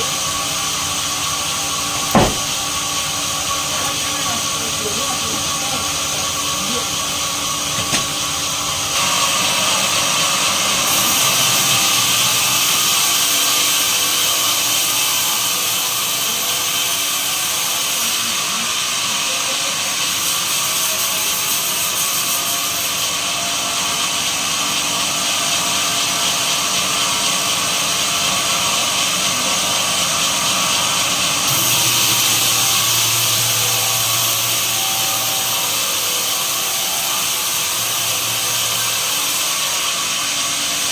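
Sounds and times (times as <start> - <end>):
power saw cutting wood: 0.0 - 40.9.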